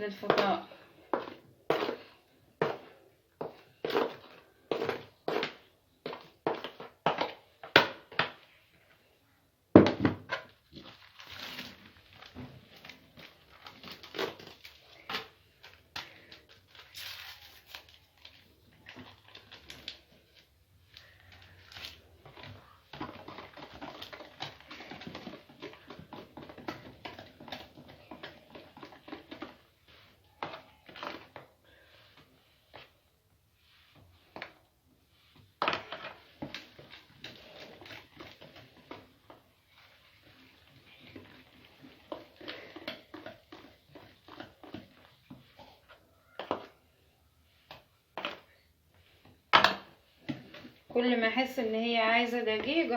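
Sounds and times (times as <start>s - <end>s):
utensil scraping in mixing bowl: 16.9s - 52.9s.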